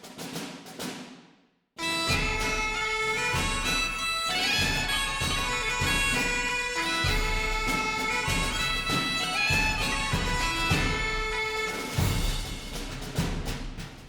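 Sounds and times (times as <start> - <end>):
droning wind instrument melody: 1.8 - 12.4.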